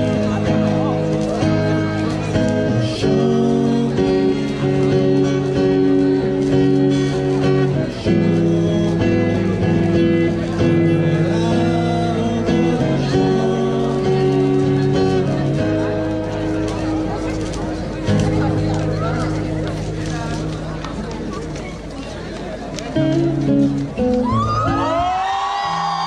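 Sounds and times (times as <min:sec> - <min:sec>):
live guitar music: 0:00.0 - 0:26.0.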